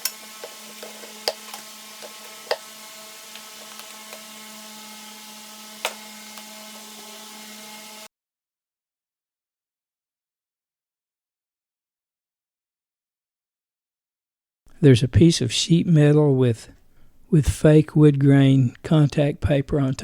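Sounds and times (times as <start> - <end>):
hand tools clicking on metal: 0.0 - 2.7.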